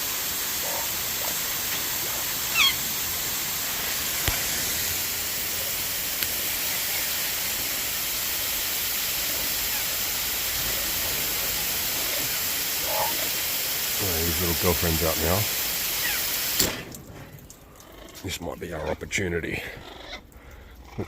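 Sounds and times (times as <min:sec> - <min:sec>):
steady hiss: 0:00.0 - 0:17.2
parrot squawk: 0:02.5 - 0:02.9, 0:06.6 - 0:07.3, 0:15.9 - 0:16.4.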